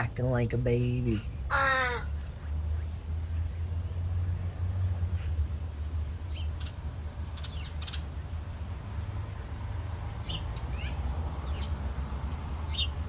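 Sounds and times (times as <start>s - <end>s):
young bird calling: 1.5s - 2.2s.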